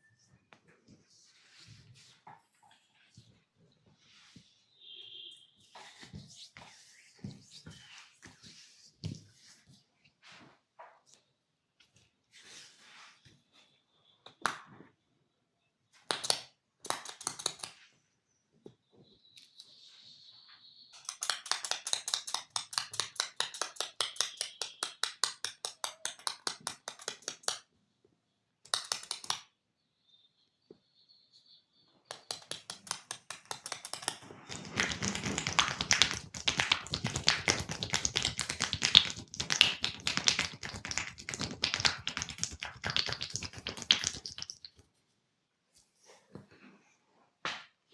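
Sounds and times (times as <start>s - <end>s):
hands tapping on skin: 16.1s - 17.8s, 21.0s - 27.6s, 28.7s - 29.4s, 32.1s - 44.8s.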